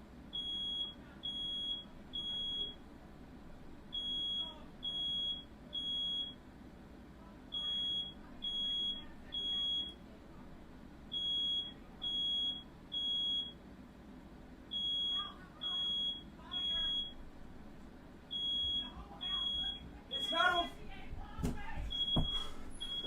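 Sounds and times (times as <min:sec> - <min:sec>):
smoke alarm beeping: 0:00.3 - 0:02.8, 0:03.9 - 0:06.4, 0:07.5 - 0:10.0, 0:11.1 - 0:13.6, 0:14.7 - 0:17.5, 0:18.3 - 0:20.8, 0:21.9 - 0:23.0.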